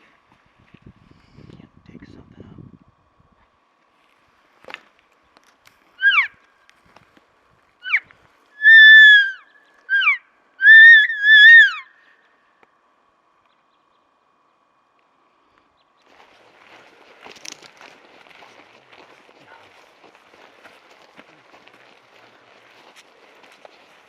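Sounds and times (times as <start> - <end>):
elk call chirps and mews: 6.0 - 6.4, 7.8 - 12.2.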